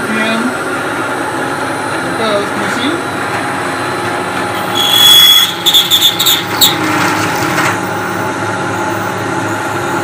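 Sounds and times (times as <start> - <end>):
end mill screeching on metal: 4.6 - 7.6.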